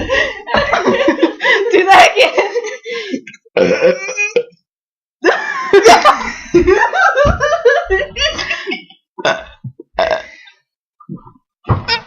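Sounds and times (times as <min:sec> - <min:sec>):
girl burping loudly: 0:03.6 - 0:04.6, 0:09.2 - 0:10.3.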